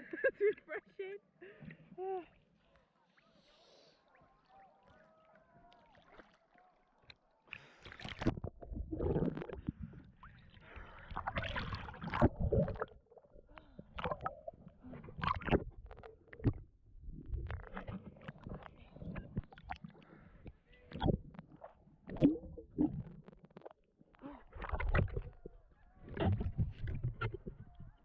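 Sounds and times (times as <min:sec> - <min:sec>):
water splashing: 0:07.5 - 0:16.6, 0:24.5 - 0:27.8.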